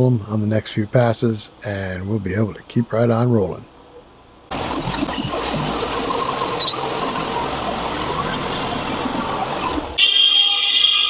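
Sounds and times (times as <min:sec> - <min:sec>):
band sawmill cutting log: 0:04.5 - 0:10.0.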